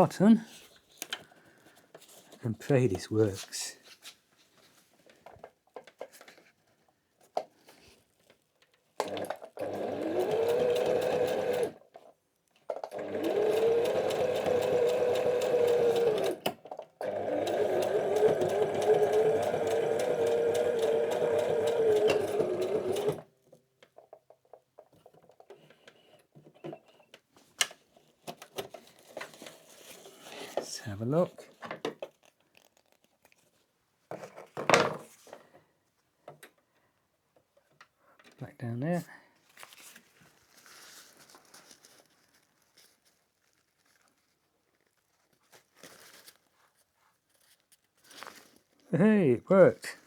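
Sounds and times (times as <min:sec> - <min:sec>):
sewing machine stitching: 0:09.0 - 0:11.9, 0:12.7 - 0:23.3.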